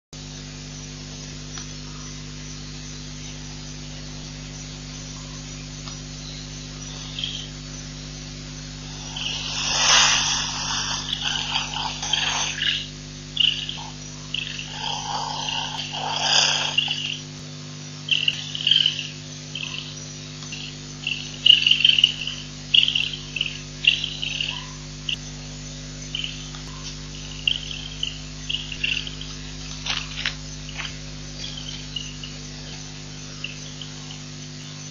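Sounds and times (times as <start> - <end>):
electrical hum: 0.2 - 34.9
high-pitched animal calls: 8.8 - 17.4, 18.1 - 24.9.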